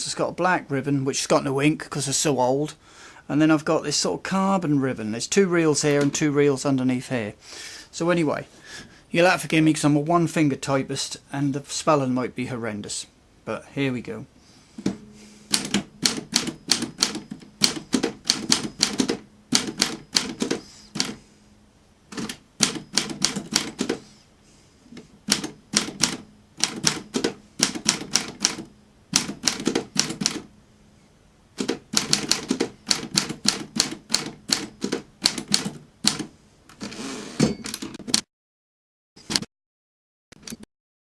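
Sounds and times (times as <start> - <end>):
typewriter keys clacking: 15.5 - 21.2, 22.1 - 24.0, 25.3 - 28.6, 29.2 - 30.4, 31.6 - 36.3.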